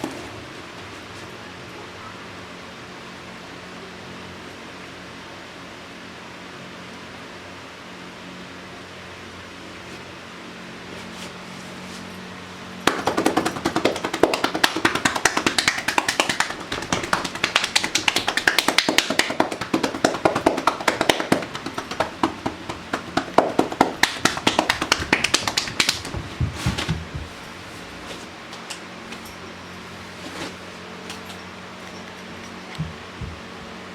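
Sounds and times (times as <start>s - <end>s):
hands slapping body: 12.9s - 27.3s.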